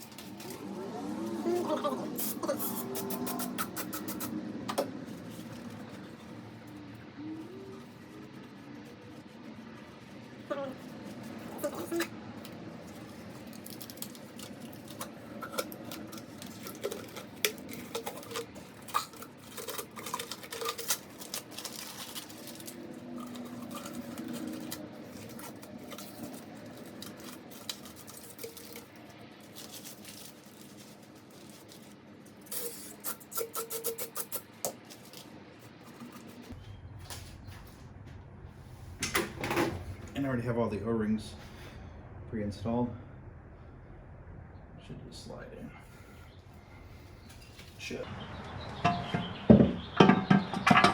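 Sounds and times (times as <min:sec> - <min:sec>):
parts and wiring handled: 0:00.0 - 0:00.6, 0:11.1 - 0:38.1.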